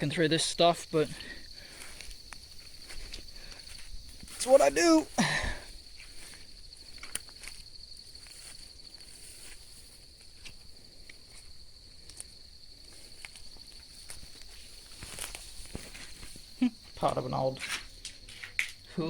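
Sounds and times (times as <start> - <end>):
footsteps through undergrowth: 1.6 - 5.1, 5.9 - 10.7, 11.3 - 16.6.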